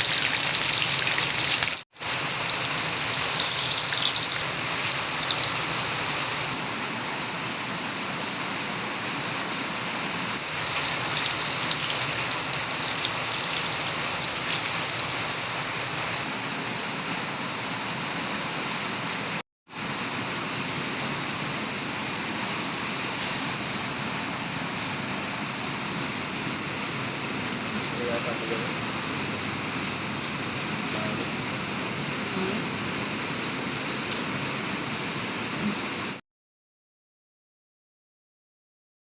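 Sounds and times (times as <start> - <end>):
fish frying in hot oil: 0.0 - 6.6, 10.3 - 16.3.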